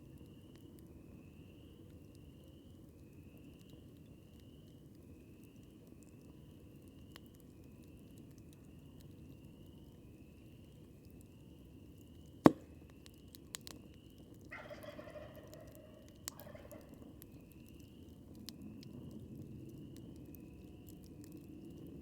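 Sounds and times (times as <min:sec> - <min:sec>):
campfire crackling: 0:00.0 - 0:22.0
fire popping: 0:01.6 - 0:14.6, 0:15.3 - 0:22.0
turkey gobbling: 0:14.5 - 0:17.0.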